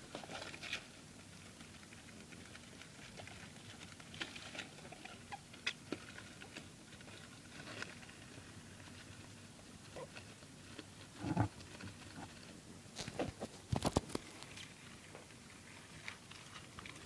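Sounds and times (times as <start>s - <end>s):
rats scurrying and scratching: 0.1s - 17.0s.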